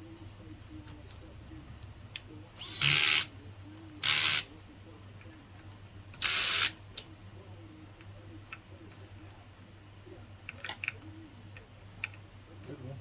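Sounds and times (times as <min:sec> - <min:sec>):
cordless drill driving a screw: 0:02.6 - 0:03.3, 0:04.0 - 0:04.5, 0:06.2 - 0:06.8.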